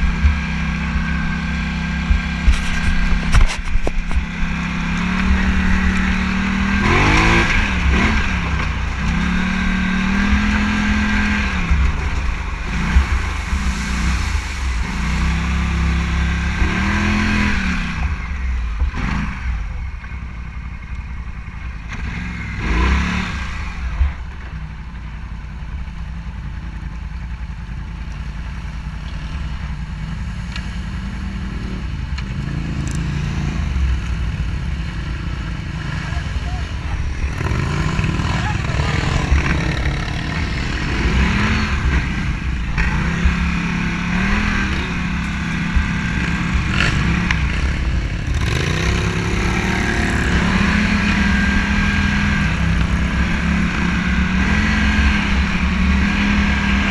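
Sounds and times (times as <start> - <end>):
wind rumble on microphone: 0.0 - 20.1
motorcycle engine running: 0.0 - 56.9.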